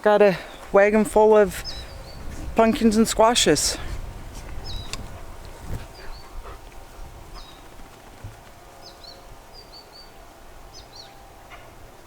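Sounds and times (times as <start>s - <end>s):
small bird chirping: 4.5s - 5.1s.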